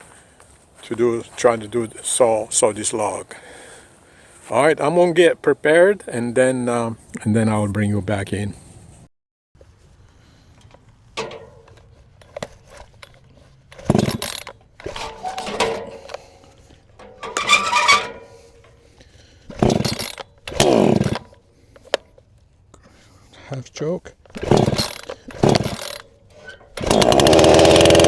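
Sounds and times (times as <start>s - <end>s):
chainsaw starter rope pulls: 10.6s - 22.3s, 24.2s - 28.0s.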